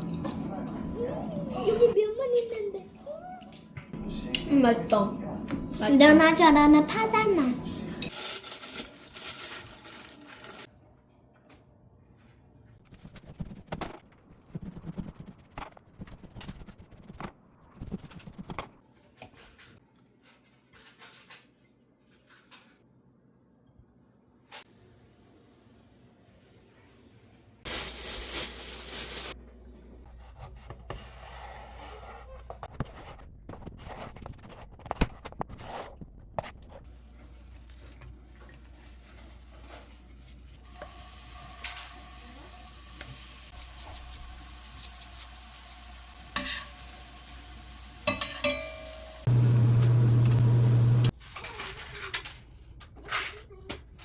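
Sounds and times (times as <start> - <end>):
food sizzling in a pan: 40.6 - 51.1
utensils scraping cookware: 46.4 - 46.8
low hum: 48.9 - 51.1
loud low buzz: 49.3 - 51.1.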